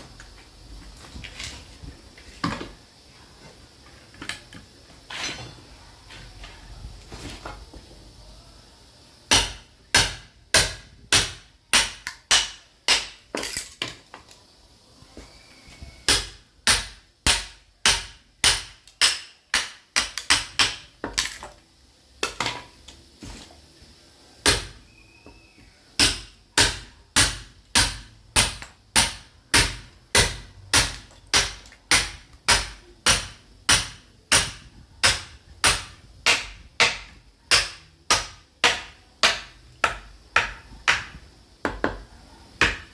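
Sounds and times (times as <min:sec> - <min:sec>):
sledgehammer striking steel chisel: 0:26.0 - 0:41.2.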